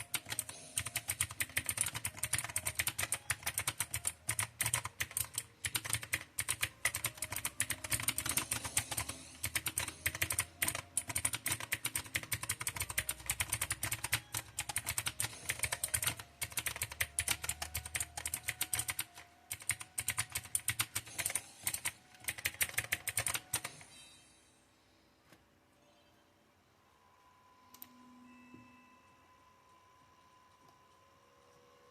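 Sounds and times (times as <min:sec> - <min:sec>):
mechanical keyboard typing: 0:00.0 - 0:23.8.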